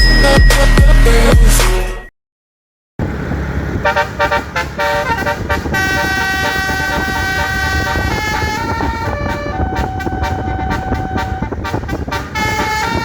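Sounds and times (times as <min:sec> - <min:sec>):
low engine rumble: 0:03.0 - 0:13.0
multi-tone bus horn playing a tune: 0:03.8 - 0:13.0.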